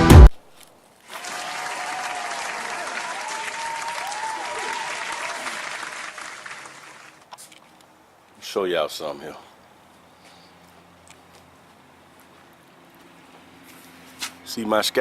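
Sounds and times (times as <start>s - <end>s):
people cheering: 1.1s - 7.1s
crowd applause: 1.1s - 7.2s.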